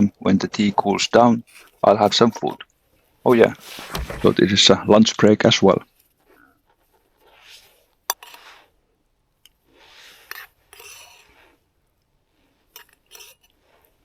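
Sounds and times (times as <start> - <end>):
rustling and scraping: 3.3 - 4.8.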